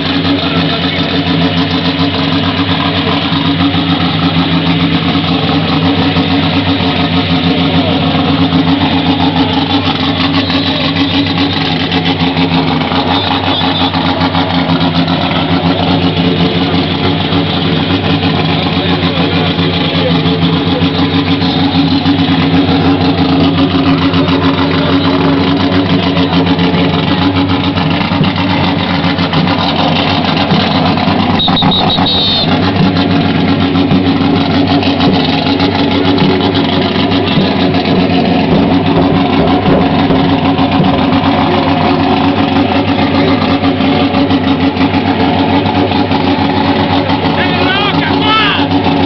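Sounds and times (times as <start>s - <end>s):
car engine running: 0.0s - 49.0s
short high-pitched whistle: 31.4s - 32.5s.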